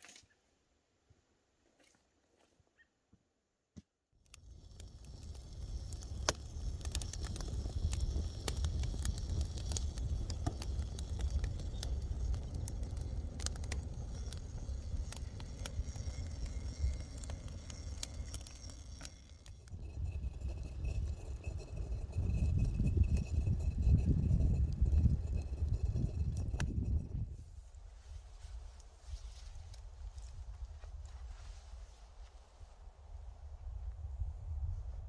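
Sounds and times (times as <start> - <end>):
campfire crackling and popping: 4.2 - 27.2
low rumble: 4.6 - 27.5.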